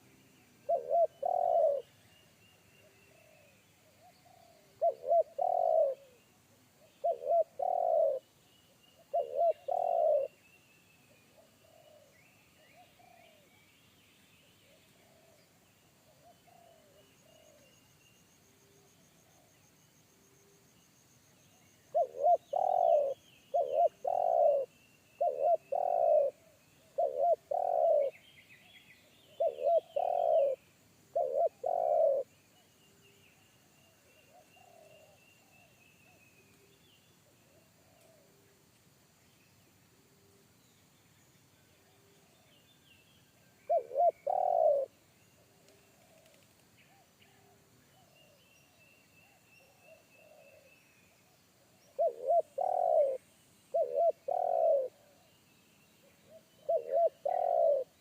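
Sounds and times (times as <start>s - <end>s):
faint dove cooing softly: 0.0s - 13.6s, 14.6s - 20.8s, 21.8s - 38.7s, 41.6s - 58.0s
small birds chirping: 0.0s - 19.5s, 21.5s - 39.8s, 40.4s - 58.0s
dove cooing loudly: 0.7s - 1.8s, 4.2s - 6.2s, 7.0s - 8.2s, 9.1s - 10.3s, 21.9s - 26.4s, 27.0s - 28.1s, 29.4s - 32.3s, 43.7s - 44.9s, 52.0s - 55.1s, 56.7s - 58.0s.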